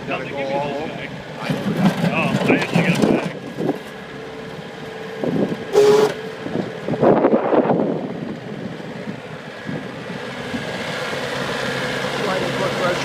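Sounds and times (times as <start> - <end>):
skid steer engine running: 0.0 - 13.0
engine burst and whine: 0.8 - 13.0.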